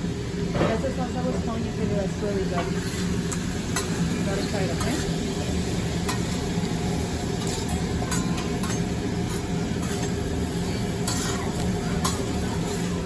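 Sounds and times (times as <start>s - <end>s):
restaurant background rumble: 0.0s - 13.0s
utensils clinking: 7.3s - 13.0s.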